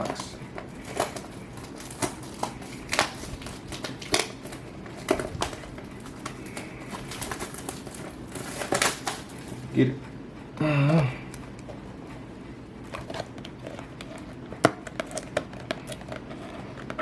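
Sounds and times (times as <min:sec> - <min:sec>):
plastic wrap and foil crinkling: 0:00.0 - 0:10.0, 0:12.8 - 0:17.0
packaging being torn open: 0:00.2 - 0:09.6.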